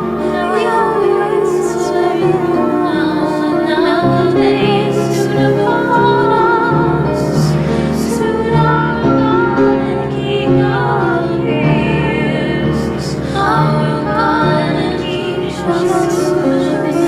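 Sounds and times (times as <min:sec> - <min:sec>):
person singing with vibrato: 0:00.0 - 0:17.0
sustained accompaniment notes: 0:00.0 - 0:17.0.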